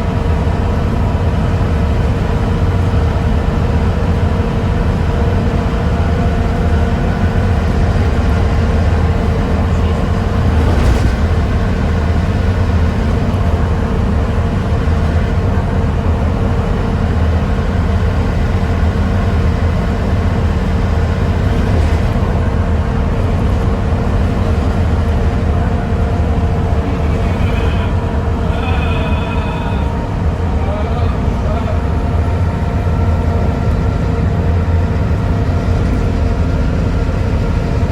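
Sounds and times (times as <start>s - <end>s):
bus diesel engine running: 0.0s - 37.9s
steady whine: 8.8s - 13.7s.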